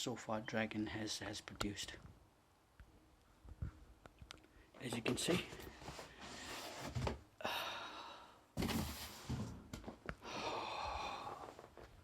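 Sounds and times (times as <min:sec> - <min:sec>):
man sighing breathily: 0:07.4 - 0:08.5, 0:10.2 - 0:11.6.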